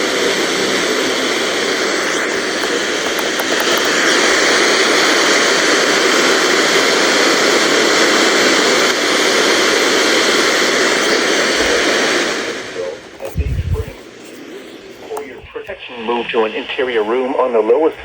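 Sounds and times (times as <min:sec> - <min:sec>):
radio static hiss: 0:00.0 - 0:18.0.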